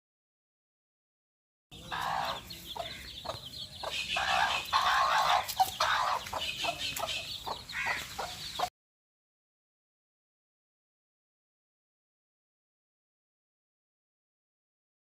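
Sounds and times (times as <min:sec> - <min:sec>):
hen clucking: 0:01.8 - 0:08.7.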